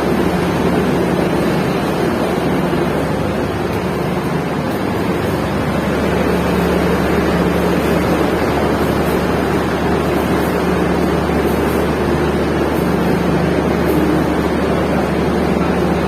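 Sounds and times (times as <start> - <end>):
constant low hum: 0.0 - 16.0
train rumbling on rails: 0.0 - 16.0.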